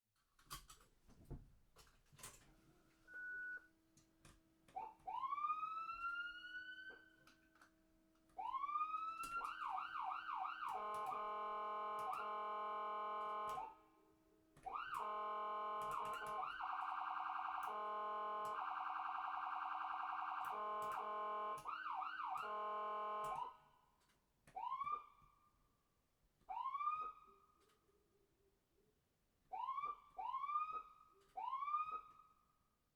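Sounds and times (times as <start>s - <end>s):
ambulance siren: 4.7s - 7.4s, 8.4s - 13.9s, 14.6s - 23.8s, 24.6s - 25.4s, 26.5s - 27.6s, 29.5s - 32.4s.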